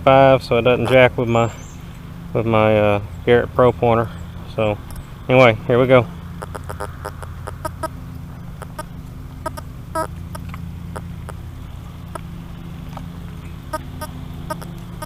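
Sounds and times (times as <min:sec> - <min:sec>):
metal detector chirps: 0:06.4 - 0:07.9, 0:08.6 - 0:11.4, 0:13.7 - 0:15.0
metal detector hum: 0:06.4 - 0:12.4, 0:13.7 - 0:15.0.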